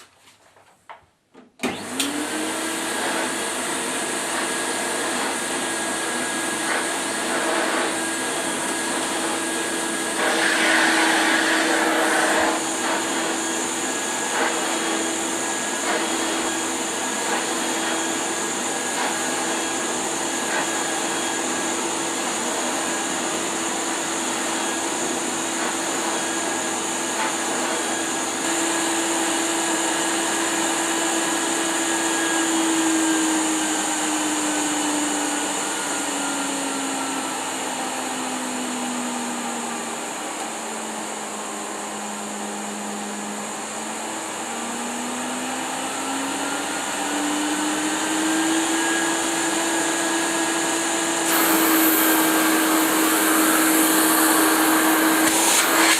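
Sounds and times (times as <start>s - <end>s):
vacuum cleaner motor whine: 1.4s - 55.9s.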